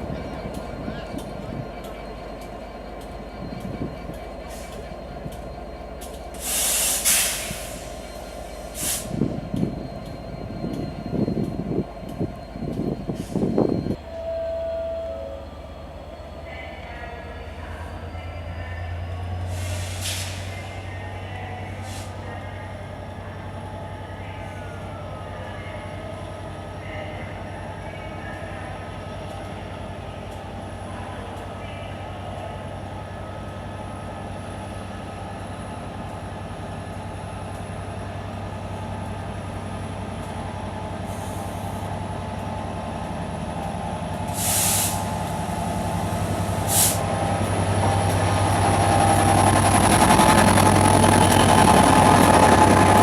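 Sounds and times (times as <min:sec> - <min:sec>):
locomotive hum: 0:00.0 - 0:53.0
train rumble: 0:00.0 - 0:53.0
short sharp hisses: 0:06.4 - 0:08.0, 0:44.4 - 0:45.1.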